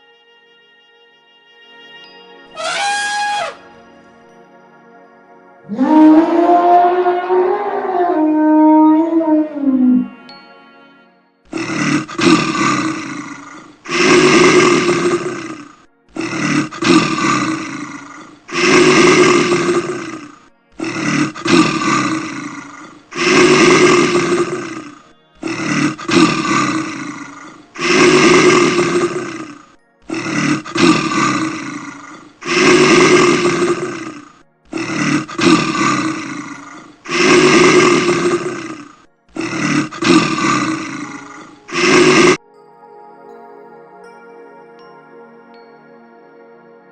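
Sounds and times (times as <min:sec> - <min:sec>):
loud animal calls: 0:02.6 - 0:03.6, 0:11.6 - 0:34.2.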